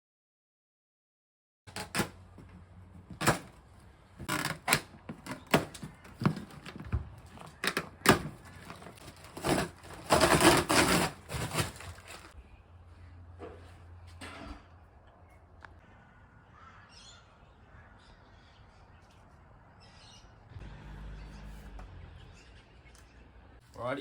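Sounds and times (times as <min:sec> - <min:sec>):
scraping rustle: 0:08.3 - 0:12.4.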